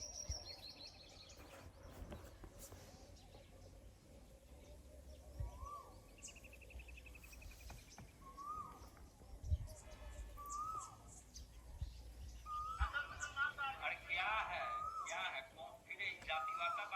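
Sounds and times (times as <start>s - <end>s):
bird whistle rising and falling: 8.2s - 8.8s, 10.4s - 11.0s, 12.4s - 13.0s, 14.6s - 15.2s
bird trilling: 8.2s - 9.0s, 10.4s - 11.1s, 12.4s - 13.6s, 14.2s - 15.5s, 16.2s - 16.9s.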